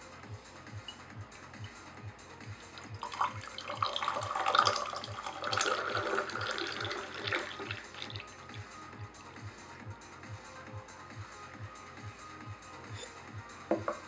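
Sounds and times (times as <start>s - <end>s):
music with steady beat: 0.0s - 3.6s, 7.7s - 14.0s
liquid pouring from teapot: 2.7s - 8.4s.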